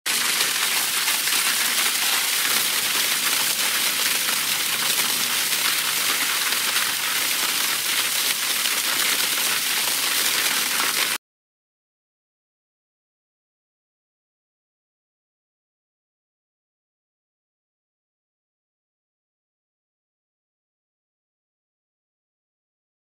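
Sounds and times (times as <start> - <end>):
water rushing down spillway: 0.1 - 11.2.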